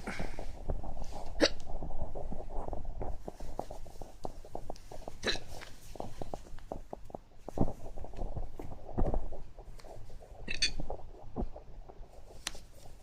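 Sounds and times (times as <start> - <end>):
soft low thumps: 0.0 - 13.0
high hiccup: 1.4 - 1.6, 5.2 - 5.5.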